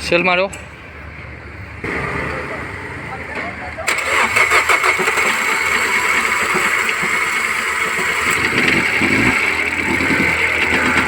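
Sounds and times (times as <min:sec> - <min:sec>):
car engine running: 0:01.8 - 0:11.0
rapid engine knock: 0:03.4 - 0:11.0.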